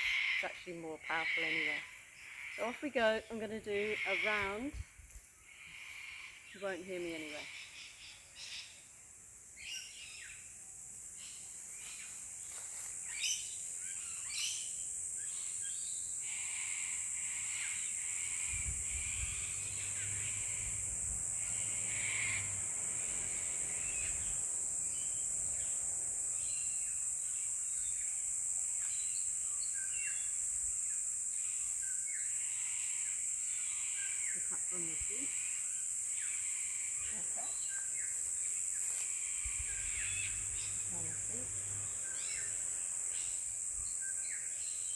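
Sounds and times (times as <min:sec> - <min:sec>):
steady high hiss: 0:01.9 - 0:44.9
birds chirping: 0:31.4 - 0:44.9.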